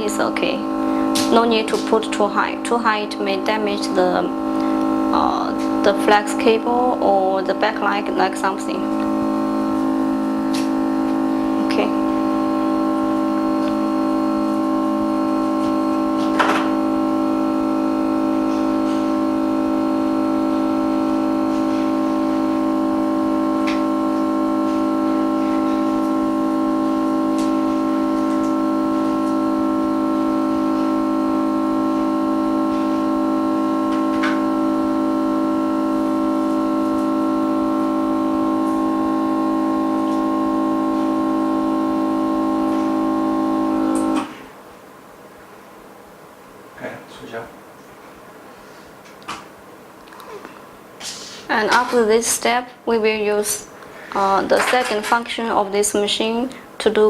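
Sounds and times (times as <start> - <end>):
held keyboard chord: 0.0 - 44.4.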